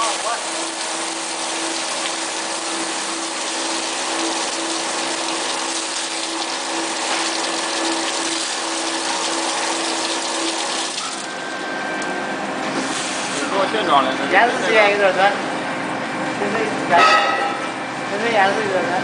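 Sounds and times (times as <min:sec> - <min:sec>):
water spraying: 0:00.0 - 0:11.6
pump running: 0:00.0 - 0:16.0.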